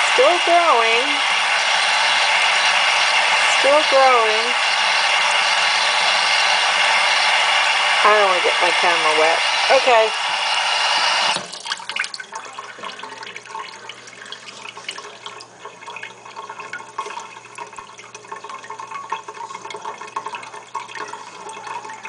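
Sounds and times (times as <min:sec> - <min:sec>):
water drips and splashes: 0:11.3 - 0:22.0
water trickling from faucet: 0:11.3 - 0:22.0.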